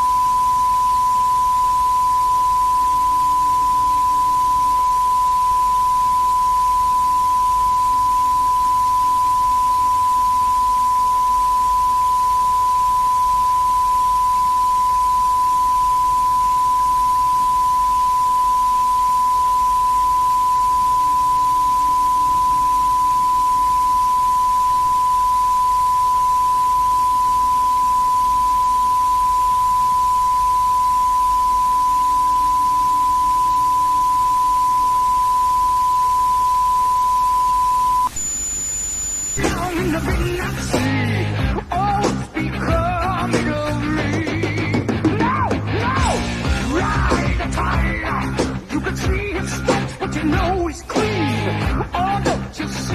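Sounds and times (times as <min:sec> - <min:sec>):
steady test tone: 0:00.0 - 0:40.8
tape hiss: 0:00.0 - 0:44.7.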